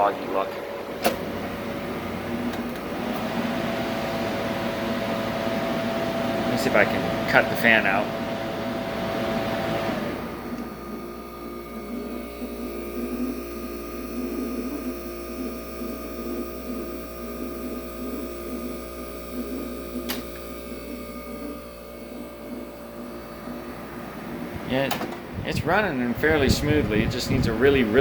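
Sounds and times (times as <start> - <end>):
air conditioner compressor humming: 0.0 - 28.0
fan air noise: 0.0 - 28.0
sharp click: 20.0 - 20.4.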